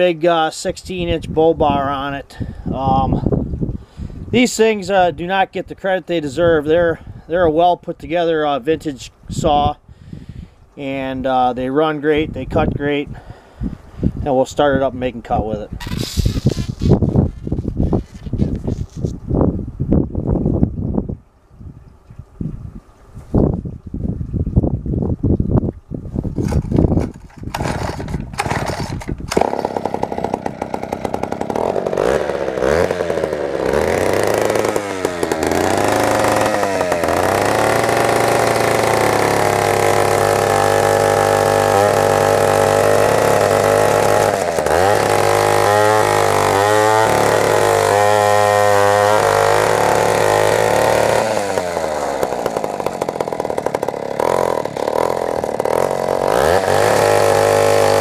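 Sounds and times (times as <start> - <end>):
chainsaw revving: 15.8 - 18.8, 26.4 - 58.0.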